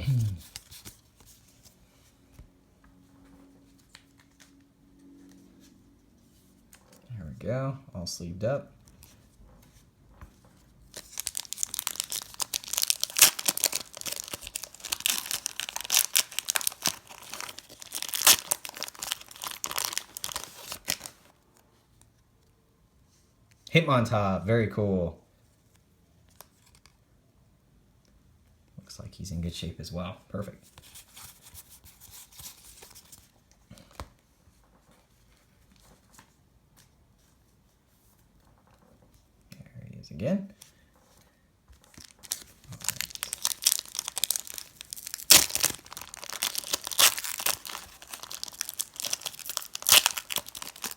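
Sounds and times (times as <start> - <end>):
plastic packaging rustling: 10.9 - 21.3, 41.8 - 50.9
wrapper tearing and crinkling: 10.9 - 21.3, 41.8 - 50.9.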